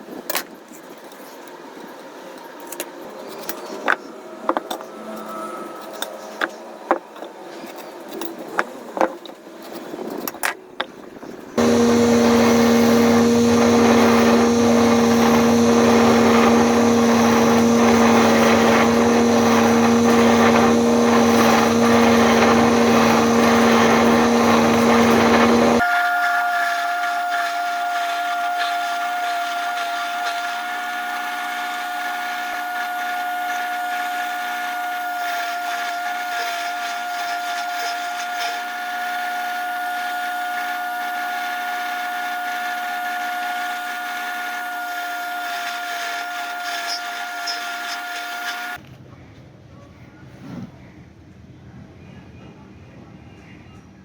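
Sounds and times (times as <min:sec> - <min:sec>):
higher-pitched tool running: 0:11.6 - 0:48.8
power tool running: 0:11.6 - 0:48.8.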